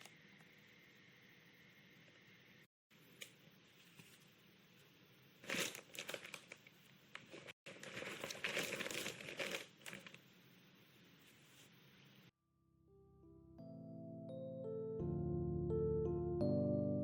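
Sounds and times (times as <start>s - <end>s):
crinkly sheet crumpling: 5.4s - 10.3s.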